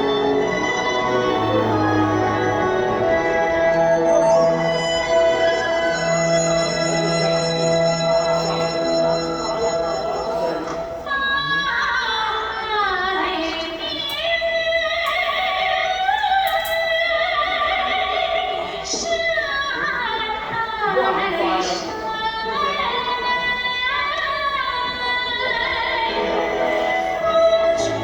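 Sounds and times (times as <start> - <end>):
instrumental accompaniment: 0.0 - 11.1
woman singing with vibrato: 0.0 - 28.0.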